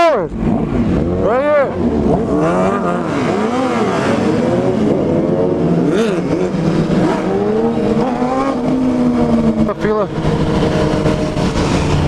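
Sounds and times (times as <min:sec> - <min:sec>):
motorcycle engine revving: 0:00.0 - 0:12.0
wind on microphone: 0:04.1 - 0:12.0.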